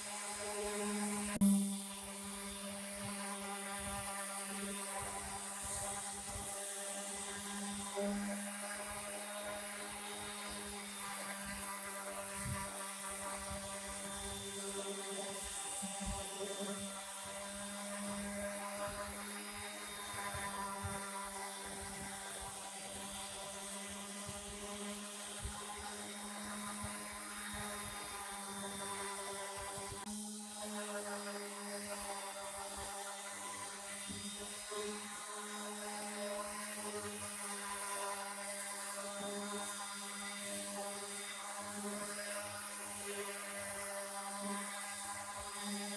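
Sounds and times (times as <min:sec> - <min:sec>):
power tool motor humming: 0:00.0 - 0:45.9.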